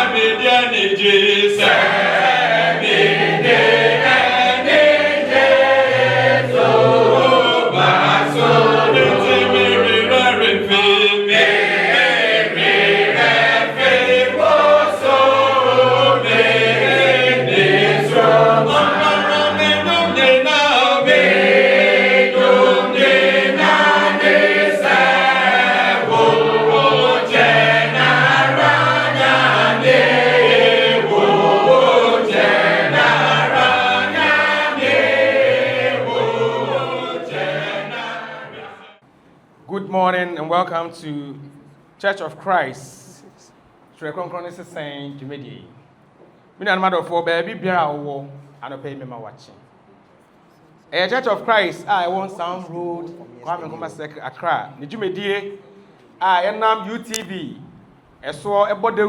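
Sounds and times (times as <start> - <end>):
choir singing a hymn: 0.0 - 39.0.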